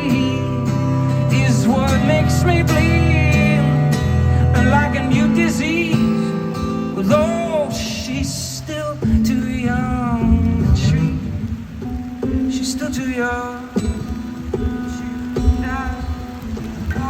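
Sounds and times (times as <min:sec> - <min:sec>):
person singing: 0:00.0 - 0:11.7, 0:12.3 - 0:17.0
acoustic guitar playing: 0:00.0 - 0:17.0.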